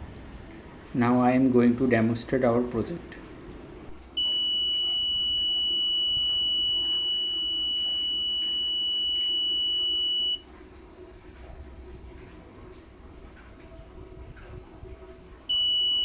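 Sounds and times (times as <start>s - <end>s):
high-pitched alarm buzzer: 4.2s - 10.4s.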